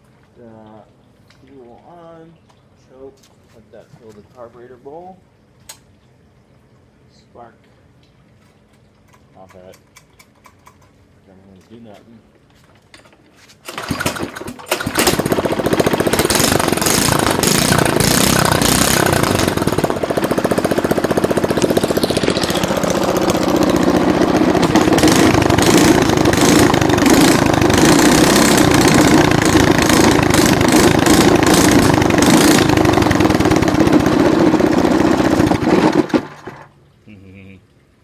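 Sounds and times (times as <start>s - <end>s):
exhaust cracks: 13.6s - 36.7s
small engine revving unmuffled: 13.7s - 36.7s.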